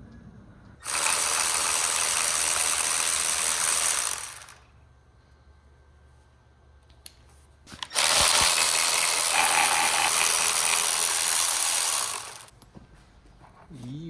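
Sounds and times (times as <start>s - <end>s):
power tool whirring hiss: 0.8s - 4.6s, 7.7s - 12.5s.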